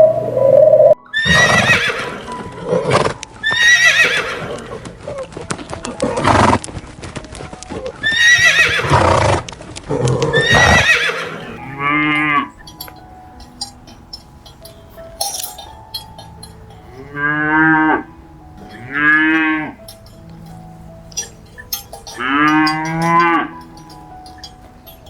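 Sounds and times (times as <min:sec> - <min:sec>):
horse neighing: 0:01.1 - 0:04.8, 0:08.0 - 0:12.5.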